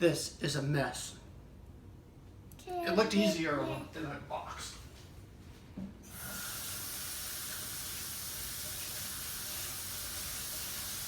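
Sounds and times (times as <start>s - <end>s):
water running into a sink: 6.1s - 11.0s.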